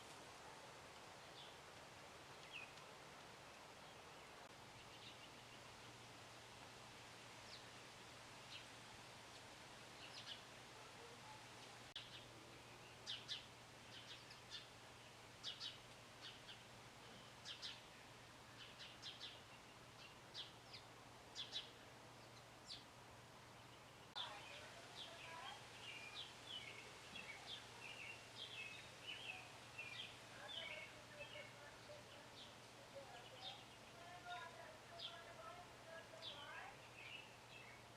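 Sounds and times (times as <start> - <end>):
songbirds chirping: 0.0 - 37.9
bird warbling song: 15.4 - 22.9, 23.6 - 35.3.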